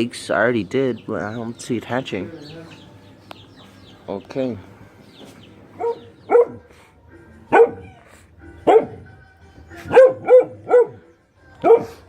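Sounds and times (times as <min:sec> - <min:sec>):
dog barking: 0:05.8 - 0:06.7, 0:07.5 - 0:07.9, 0:08.6 - 0:09.0, 0:09.8 - 0:12.0.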